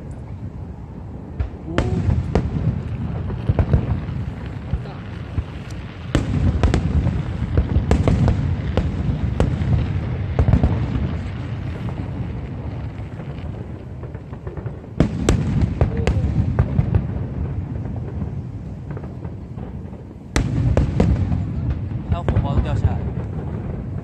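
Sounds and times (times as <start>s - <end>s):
continuous low rumble: 0.0s - 24.0s
firework bangs and crackles: 0.0s - 24.0s.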